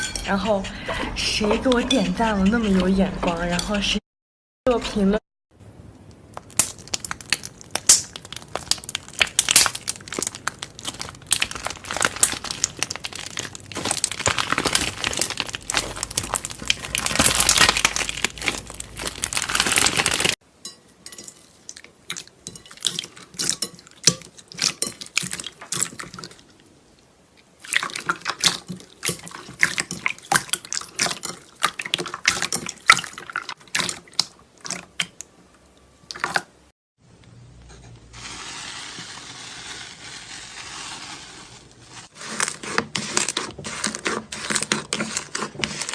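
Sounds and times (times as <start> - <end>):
slime squished by hand: 6.3 - 20.4.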